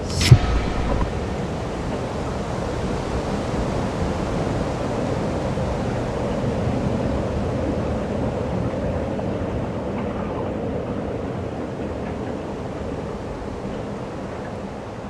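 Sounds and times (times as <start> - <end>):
steady rushing noise: 0.0 - 2.9.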